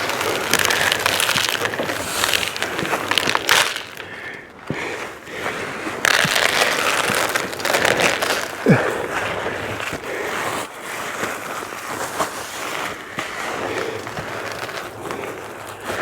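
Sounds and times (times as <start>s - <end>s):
corn kernels pouring: 0.0s - 4.0s, 6.0s - 8.5s.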